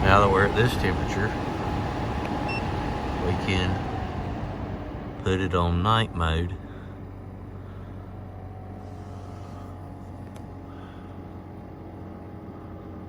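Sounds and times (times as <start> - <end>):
thin whine: 0.0 - 11.4
air conditioner hum: 0.0 - 13.0.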